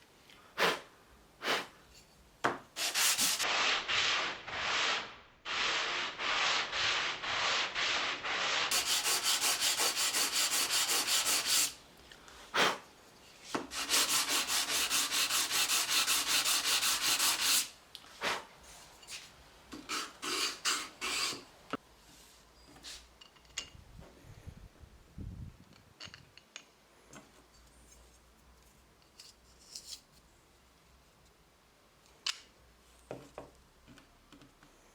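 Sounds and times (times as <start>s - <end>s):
sandpaper rubbing on wood: 2.8s - 11.8s, 13.7s - 17.7s, 19.9s - 21.4s.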